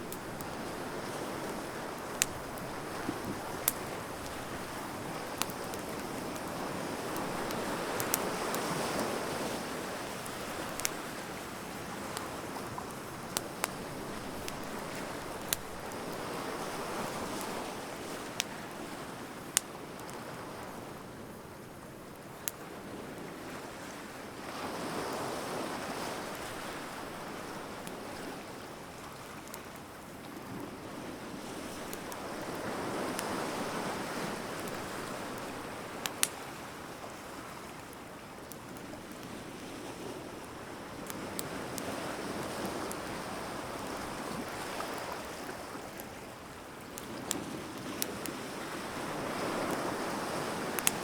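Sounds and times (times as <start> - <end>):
surf washing ashore: 0.0 - 21.0, 30.4 - 38.0, 39.4 - 51.0
bonfire wood popping and crackling: 0.0 - 21.4, 25.9 - 51.0.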